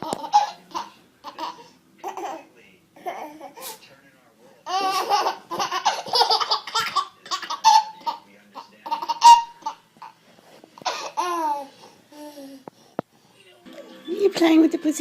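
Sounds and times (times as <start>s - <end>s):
baby laughing: 0.0s - 3.8s, 4.6s - 10.2s, 10.8s - 12.5s.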